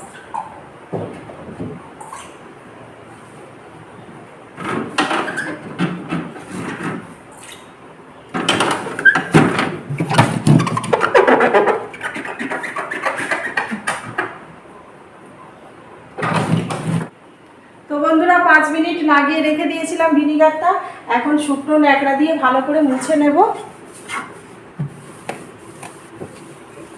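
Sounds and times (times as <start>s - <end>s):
rubbing scraping and knocking objects: 8.6s - 14.4s.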